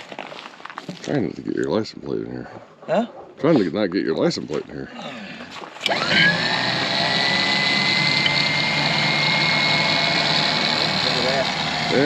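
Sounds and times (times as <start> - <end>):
electric winch motor whining: 5.8 - 12.0.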